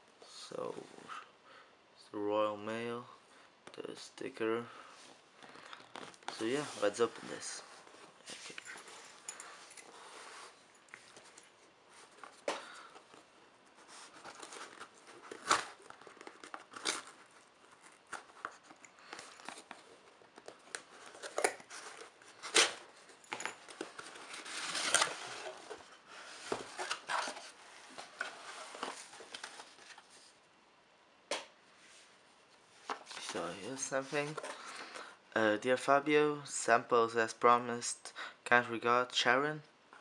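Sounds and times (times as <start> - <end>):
cardboard packaging tearing: 14.0 - 18.4, 23.8 - 25.6.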